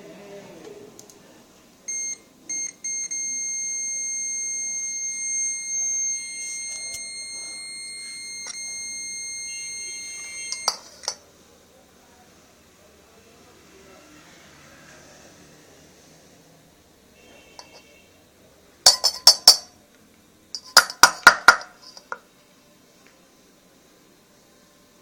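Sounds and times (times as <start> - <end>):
high-pitched electronic beeps: 1.9 - 11.0.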